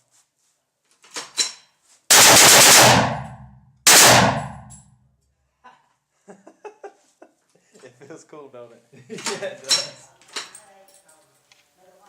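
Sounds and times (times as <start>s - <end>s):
machine-gun fire with echo: 2.1s - 4.8s.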